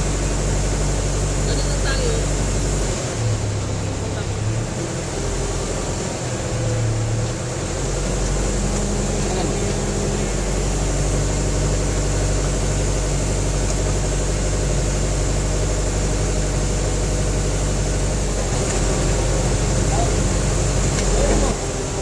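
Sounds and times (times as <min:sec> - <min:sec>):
large engine idling: 0:00.0 - 0:22.0.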